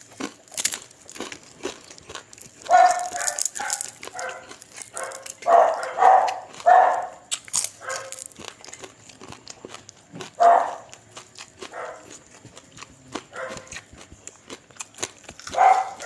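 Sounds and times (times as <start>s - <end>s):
eating clicks: 0.0s - 16.0s
dog barking: 2.6s - 7.2s, 7.8s - 8.2s, 10.4s - 11.0s, 11.6s - 12.2s, 13.3s - 13.8s, 15.4s - 16.0s.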